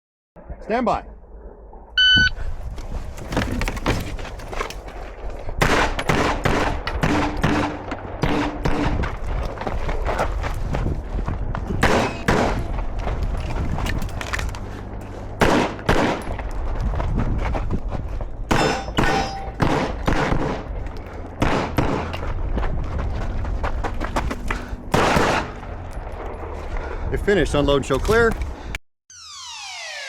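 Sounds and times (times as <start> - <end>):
steady low rumble: 0.4 - 27.4
gunshots: 5.6 - 9.1, 11.8 - 12.7, 15.4 - 16.3, 18.5 - 20.7, 21.4 - 22.1, 24.9 - 25.6.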